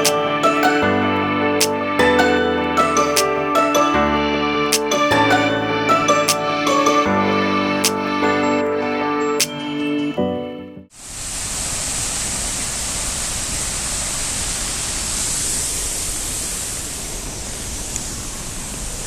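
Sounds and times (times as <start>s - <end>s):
background music: 0.0s - 10.9s.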